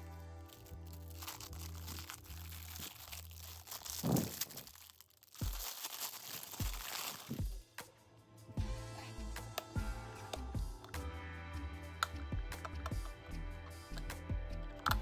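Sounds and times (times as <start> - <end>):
background music with bass: 0.0 - 3.0, 7.4 - 15.0
packaging crinkling and tearing: 0.0 - 7.5.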